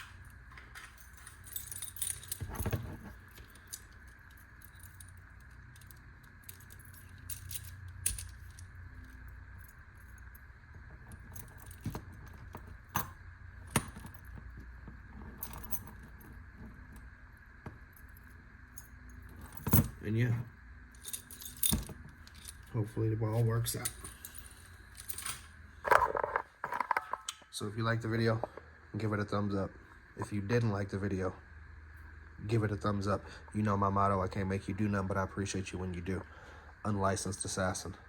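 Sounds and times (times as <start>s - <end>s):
keys jangling on a key ring: 0.2s - 17.0s, 17.9s - 20.1s, 20.9s - 22.8s, 23.4s - 25.5s.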